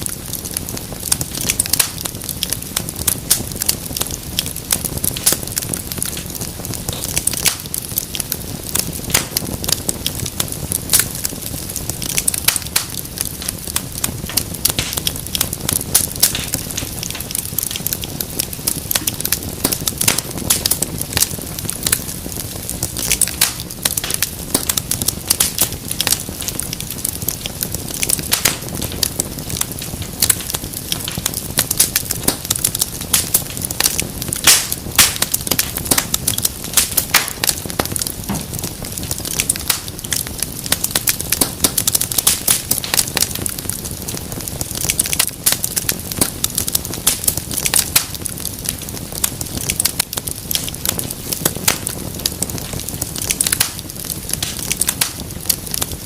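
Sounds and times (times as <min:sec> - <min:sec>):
fire pops and snaps: 0:00.0 - 0:56.0
wood fire crackling: 0:00.0 - 0:56.0.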